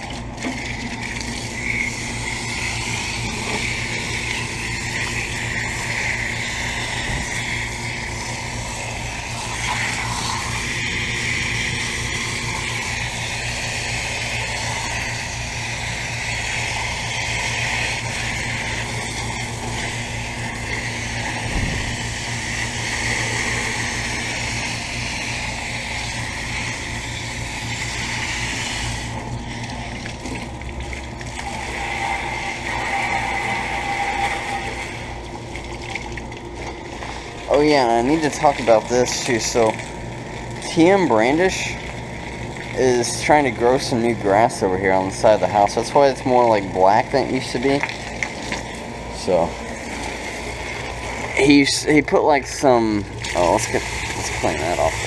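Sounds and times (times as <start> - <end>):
water spraying hiss: 0.0 - 30.0, 31.2 - 35.4, 53.1 - 55.0
air conditioner humming: 0.0 - 55.0.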